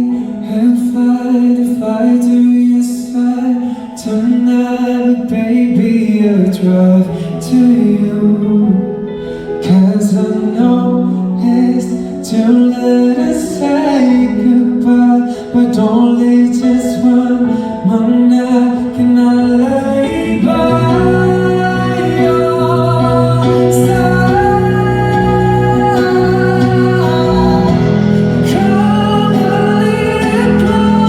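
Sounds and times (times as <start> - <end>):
man singing long notes: 0.0 - 31.0
band accompaniment: 19.0 - 31.0.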